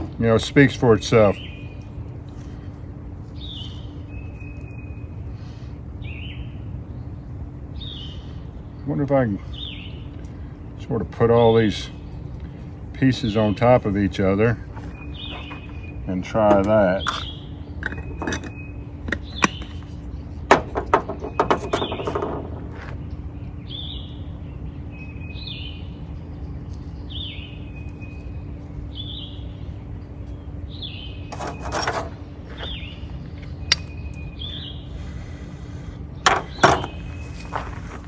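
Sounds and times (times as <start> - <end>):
steel striker on flint: 17.0 - 19.7, 33.7 - 33.9
bird chirping: 17.0 - 20.4.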